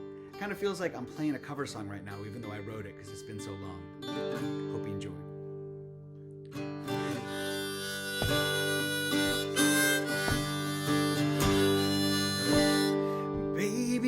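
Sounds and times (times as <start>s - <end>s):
acoustic guitar strumming: 0.0s - 14.0s
harmonica melody: 6.6s - 14.0s.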